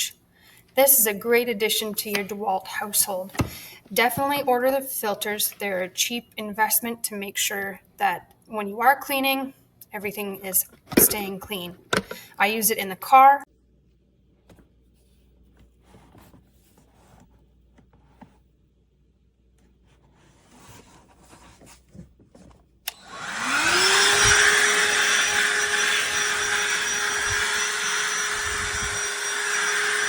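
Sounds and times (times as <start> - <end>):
handheld vacuum motor whine: 22.9 - 30.0.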